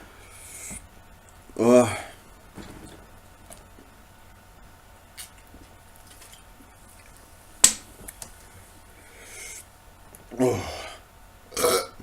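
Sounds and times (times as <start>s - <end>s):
man burping: 1.6s - 2.2s, 10.3s - 12.0s.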